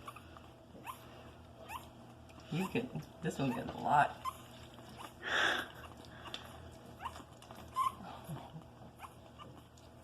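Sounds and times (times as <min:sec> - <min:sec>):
puppies suckling: 0:00.0 - 0:10.0
faint rising puppy squeaks: 0:07.0 - 0:08.0.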